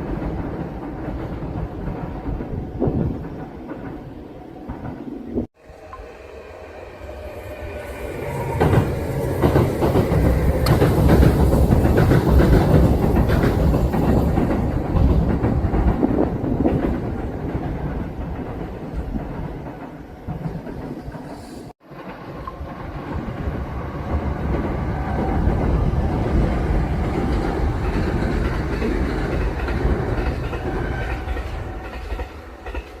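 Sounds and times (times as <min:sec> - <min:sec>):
electric train passing: 0:00.0 - 0:33.0
wheels clacking over rail joints: 0:08.3 - 0:33.0.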